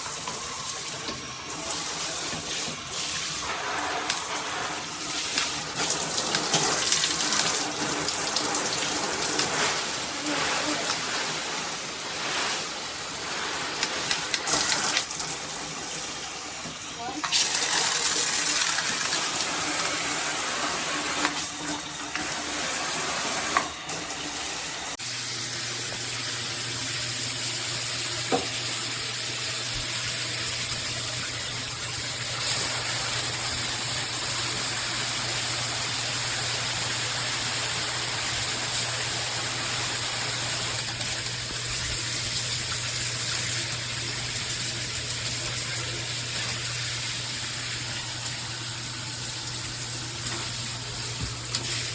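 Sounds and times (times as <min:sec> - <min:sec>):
water spraying from shower head: 0:00.0 - 0:25.0, 0:30.6 - 0:51.9.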